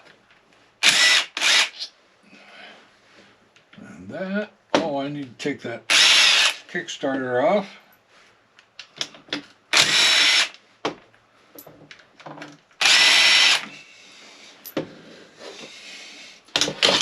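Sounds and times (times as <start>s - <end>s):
power driver whining: 0.8s - 1.9s, 5.9s - 6.7s, 9.7s - 10.6s, 12.8s - 13.8s.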